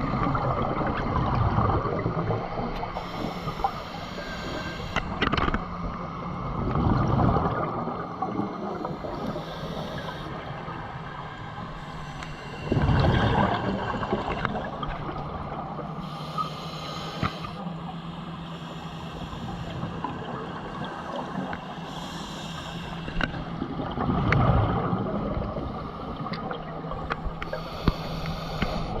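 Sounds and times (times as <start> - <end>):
exhaled bubbles rushing: 0.0 - 3.0, 6.5 - 9.4, 12.5 - 16.0, 23.6 - 25.8
steady low hum: 0.0 - 29.0
regulator inhale hiss: 2.9 - 5.3, 8.7 - 14.9, 15.9 - 23.6, 26.9 - 29.0
faint clicks: 23.0 - 23.4.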